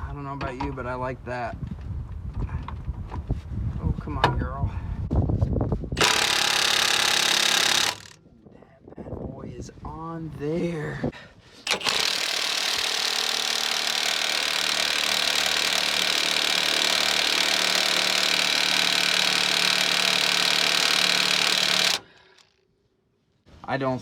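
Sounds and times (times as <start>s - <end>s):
impact wrench hammering: 6.0s - 8.2s, 11.7s - 22.4s.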